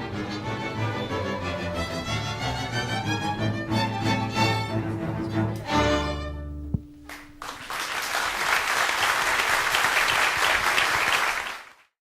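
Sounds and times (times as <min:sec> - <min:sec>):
audience applause: 0:07.1 - 0:12.0.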